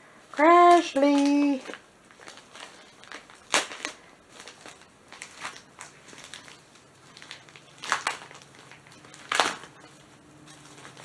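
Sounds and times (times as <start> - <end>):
packaging crinkling: 0.4 - 11.0.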